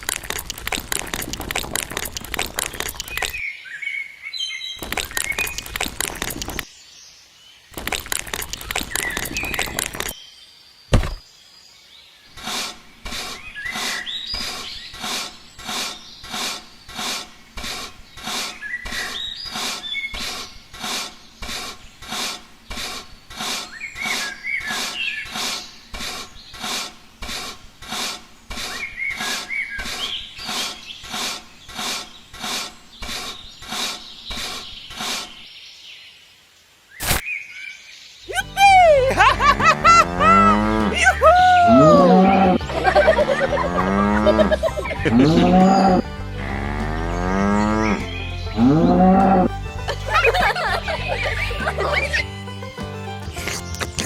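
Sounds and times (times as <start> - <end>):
birds chirping: 0.0 - 36.5, 37.2 - 54.0
sharp knock: 10.9 - 11.2.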